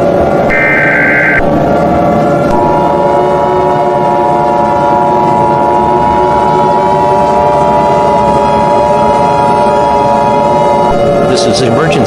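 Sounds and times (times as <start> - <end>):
noisy droning background: 0.0 - 12.0
two-tone alarm chord: 0.5 - 1.6.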